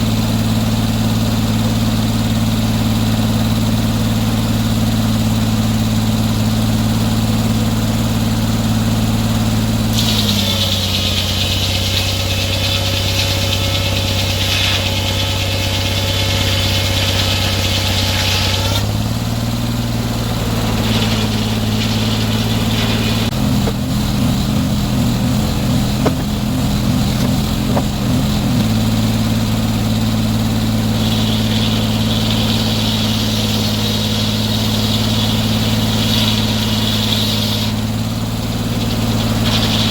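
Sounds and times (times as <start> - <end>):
sawmill engine running: 0.0 - 39.9
saw cutting through log: 8.4 - 39.9
choppy rattle: 20.8 - 29.6.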